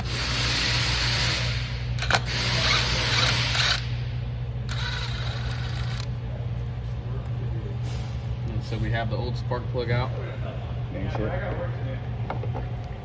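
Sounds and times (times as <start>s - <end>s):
power tool running: 0.0s - 4.1s, 4.7s - 6.2s
steady low hum: 0.0s - 13.0s.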